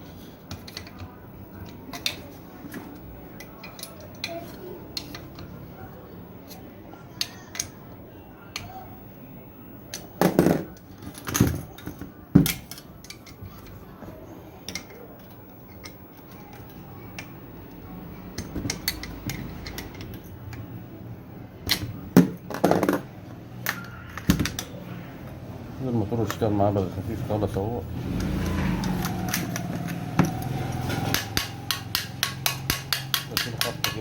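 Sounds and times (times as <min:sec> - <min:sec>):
knocks from tools and parts: 0:30.2 - 0:34.0.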